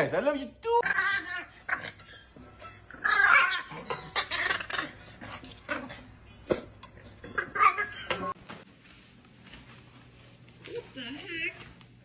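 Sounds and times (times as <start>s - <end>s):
clattering and knocking: 1.1s - 8.4s
dog sounds: 3.0s - 8.4s.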